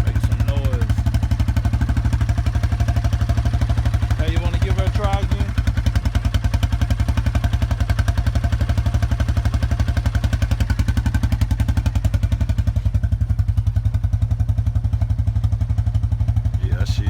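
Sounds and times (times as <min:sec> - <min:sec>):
small engine running: 0:00.0 - 0:08.1.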